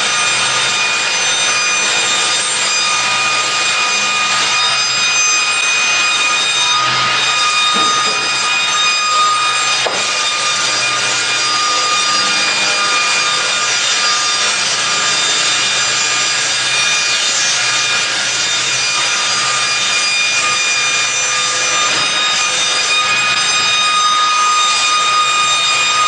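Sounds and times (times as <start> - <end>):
circular saw cutting wood: 0.0 - 26.0.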